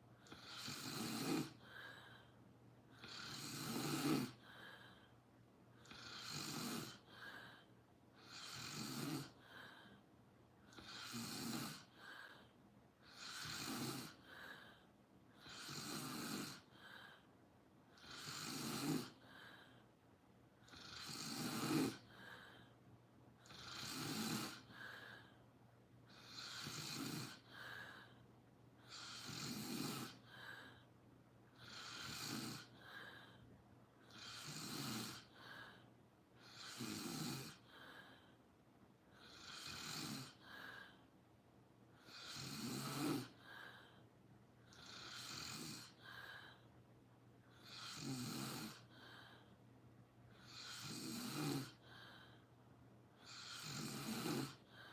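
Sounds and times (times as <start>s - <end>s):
person snoring: 0.2s - 2.3s, 2.9s - 5.1s, 5.8s - 10.0s, 10.7s - 14.8s, 15.4s - 17.3s, 17.9s - 19.8s, 20.6s - 22.7s, 23.4s - 25.3s, 26.1s - 28.2s, 28.8s - 30.9s, 31.6s - 33.4s, 34.0s - 35.8s, 36.4s - 38.3s, 39.1s - 41.1s, 42.0s - 43.9s, 44.7s - 46.6s, 47.5s - 49.5s, 50.4s - 52.4s, 53.2s - 54.9s.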